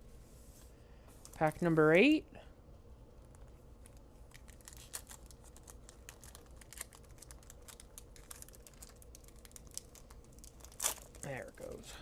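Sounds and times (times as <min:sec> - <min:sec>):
wrapper crinkling: 0:03.3 - 0:11.8.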